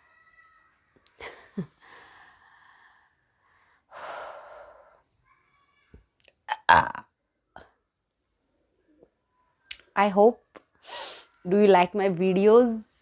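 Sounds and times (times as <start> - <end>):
woman breathing and gasping: 1.2 - 5.2.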